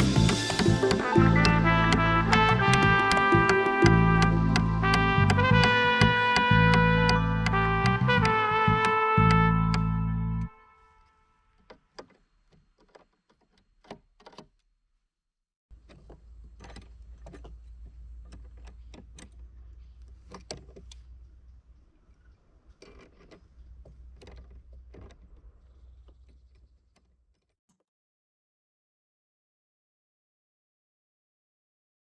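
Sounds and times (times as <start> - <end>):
objects being handled clicking: 15.8 - 27.6.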